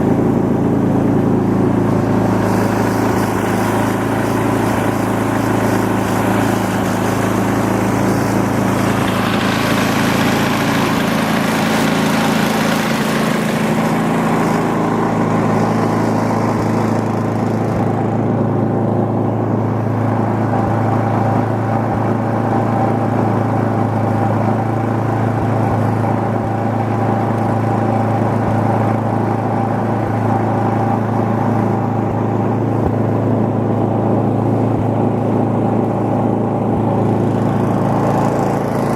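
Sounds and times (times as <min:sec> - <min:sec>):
small engine running: 0:00.0 - 0:38.9
rushing hiss: 0:01.8 - 0:17.8.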